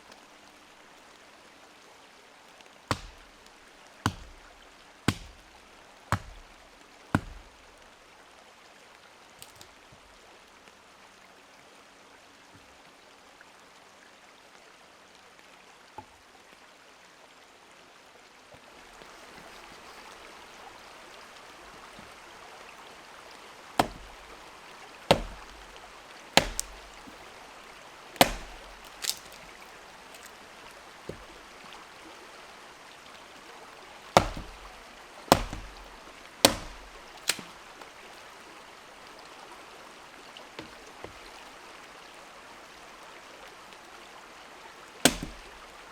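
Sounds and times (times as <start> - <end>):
flowing water rushing: 0.0 - 14.2, 18.0 - 45.9
sharp knocking blows: 2.9 - 3.3, 4.1 - 4.5, 5.1 - 5.5, 6.1 - 6.6, 7.2 - 7.5, 23.8 - 24.2, 25.1 - 25.7, 26.4 - 27.2, 28.2 - 29.5, 34.2 - 37.6, 45.1 - 45.6.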